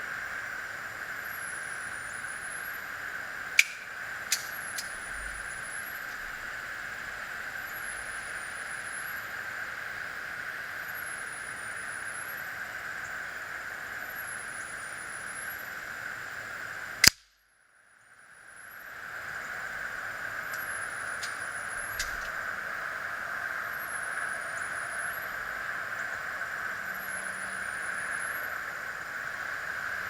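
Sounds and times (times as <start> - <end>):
steady hiss: 0.0 - 30.0
air pistol shot: 3.6 - 4.6, 17.0 - 17.3.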